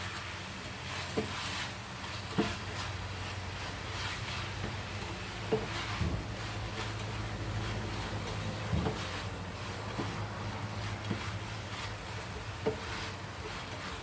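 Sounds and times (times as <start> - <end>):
food sizzling in a pan: 0.0 - 14.0.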